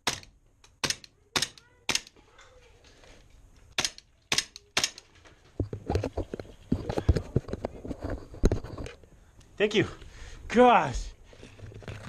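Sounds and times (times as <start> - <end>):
knocking and rustling at microphone: 5.4 - 9.0.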